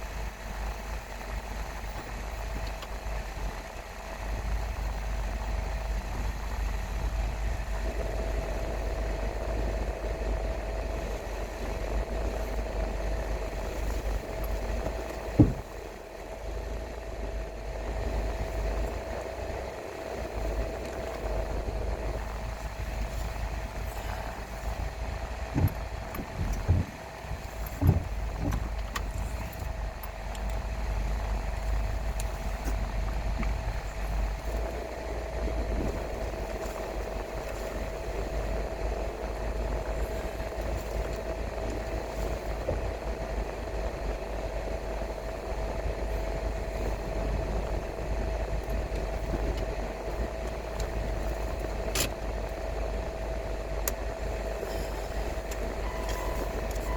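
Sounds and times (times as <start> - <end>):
car engine and road rumble: 0.0 - 56.9
faint thin whine: 30.4 - 56.9.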